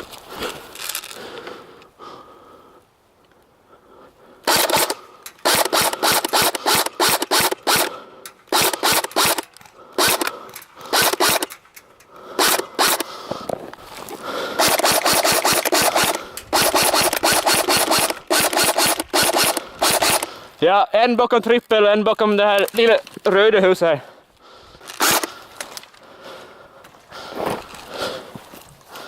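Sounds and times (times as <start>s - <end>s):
rustling through dry brush: 0.0s - 2.2s, 8.7s - 20.6s, 22.2s - 29.0s.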